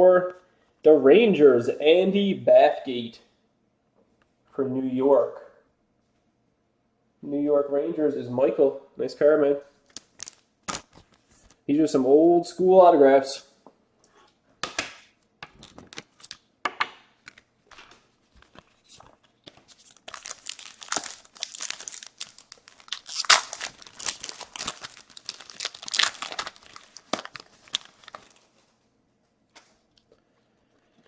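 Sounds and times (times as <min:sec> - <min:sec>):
wrapper crinkling and tearing: 0:09.8 - 0:11.2, 0:15.6 - 0:16.4, 0:18.4 - 0:28.6.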